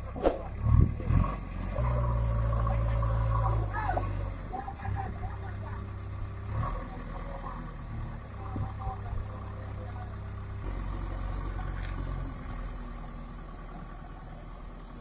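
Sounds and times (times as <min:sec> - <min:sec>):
diesel engine running at low revs: 0:00.0 - 0:15.0.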